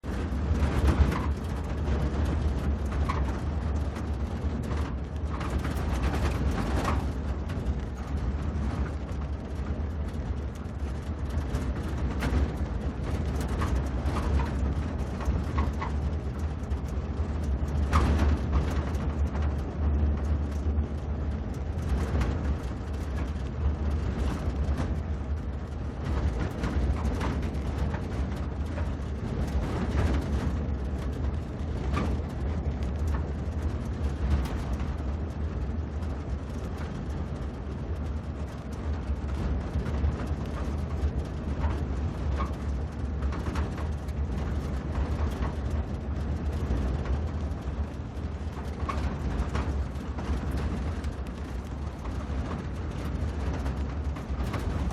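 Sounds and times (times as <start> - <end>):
short rattles and knocks: 0.0 - 35.2
engine and road rumble: 0.0 - 54.9.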